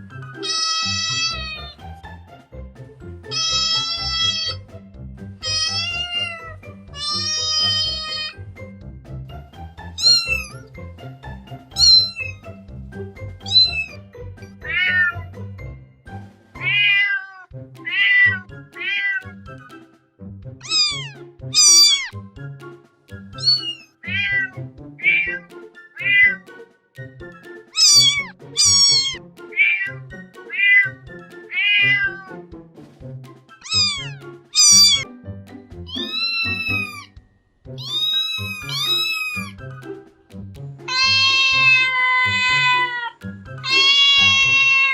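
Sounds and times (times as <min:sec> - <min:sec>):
background music with low beat: 0:00.0 - 0:16.9, 0:17.5 - 0:44.9
cat meowing: 0:00.4 - 0:01.8, 0:03.3 - 0:04.6, 0:05.4 - 0:08.4, 0:10.0 - 0:10.6, 0:11.8 - 0:12.4, 0:13.4 - 0:14.0, 0:14.6 - 0:15.3, 0:16.6 - 0:19.4, 0:20.6 - 0:22.1, 0:23.4 - 0:26.5, 0:27.8 - 0:32.4, 0:33.6 - 0:35.1, 0:35.9 - 0:37.2, 0:37.8 - 0:39.6, 0:40.9 - 0:44.9.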